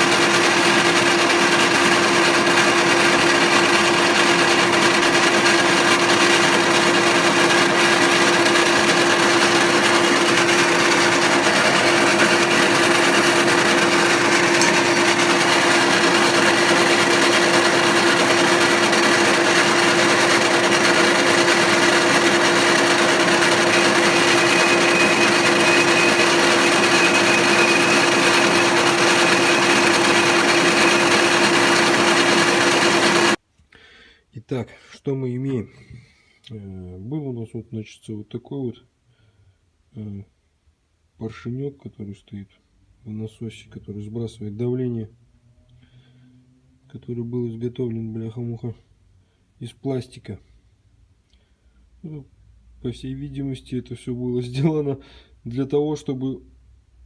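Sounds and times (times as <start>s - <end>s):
lathe motor whirr: 0.0s - 33.4s.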